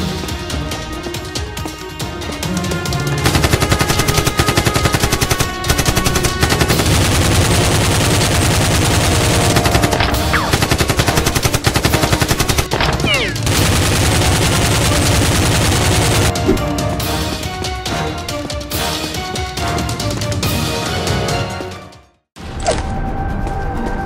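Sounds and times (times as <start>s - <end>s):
action music: 0.0s - 24.0s
machine-gun fire: 3.2s - 16.4s.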